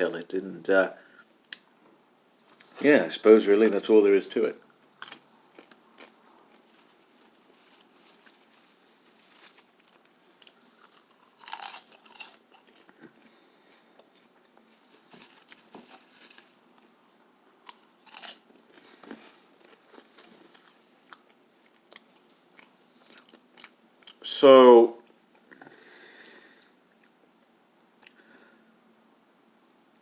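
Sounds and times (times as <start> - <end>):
popcorn crunching and chewing: 4.7 - 16.9, 17.6 - 24.2.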